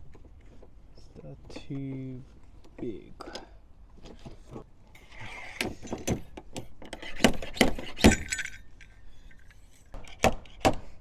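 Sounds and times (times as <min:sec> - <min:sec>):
hard pieces clinking and clattering: 0:07.0 - 0:10.0.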